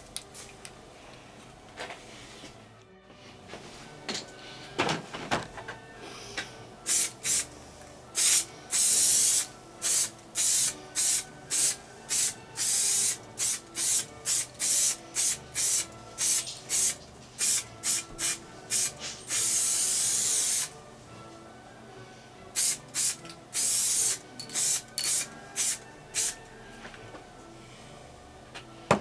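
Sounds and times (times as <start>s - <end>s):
aerosol spray hissing: 6.8s - 20.8s, 22.6s - 26.4s.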